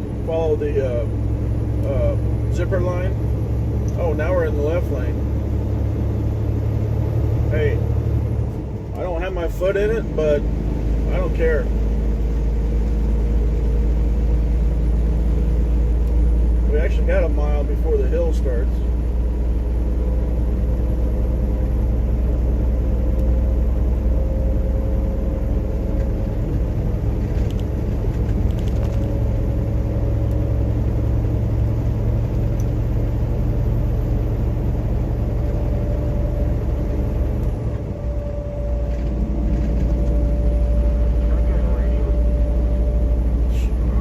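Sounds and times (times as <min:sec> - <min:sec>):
engine and road noise drone: 0:00.0 - 0:44.0
faint whine: 0:35.4 - 0:44.0.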